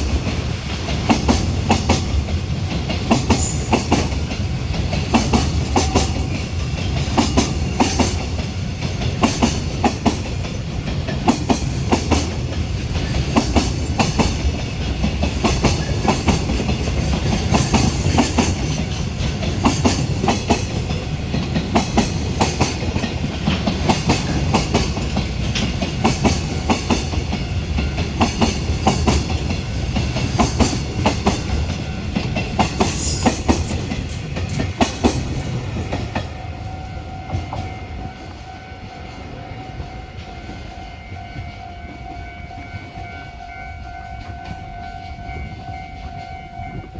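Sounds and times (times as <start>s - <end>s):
wagon wheels clacking on rail joints: 0.0s - 36.4s
freight train rumbling past: 0.0s - 46.9s.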